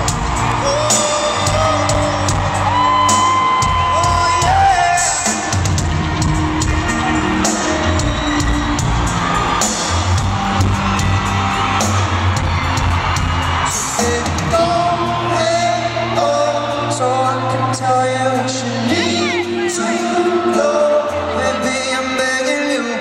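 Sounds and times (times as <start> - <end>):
live pop band playing: 0.0 - 23.0
person singing: 0.2 - 9.2, 13.7 - 23.0.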